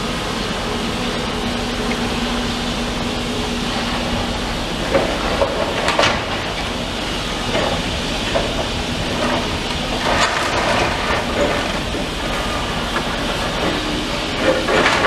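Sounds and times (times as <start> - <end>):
machinery engine drone: 0.0 - 15.0
rubble crunching and scraping: 3.3 - 15.0.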